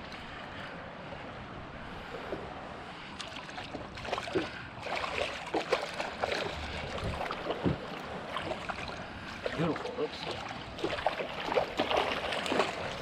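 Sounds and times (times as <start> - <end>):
water lapping around boat: 0.0 - 13.0
short splashes and knocks: 3.2 - 13.0.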